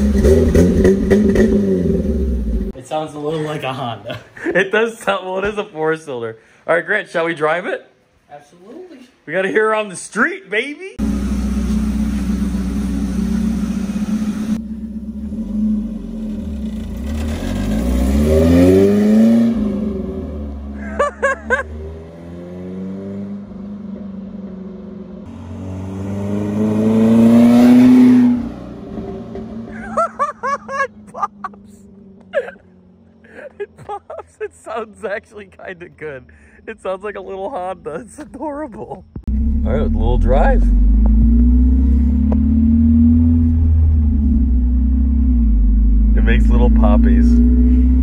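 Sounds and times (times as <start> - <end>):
truck engine accelerating: 0.0 - 2.8, 11.0 - 35.8, 39.3 - 48.0
people talking: 2.8 - 11.0, 33.8 - 39.0, 39.6 - 40.8, 46.1 - 47.5.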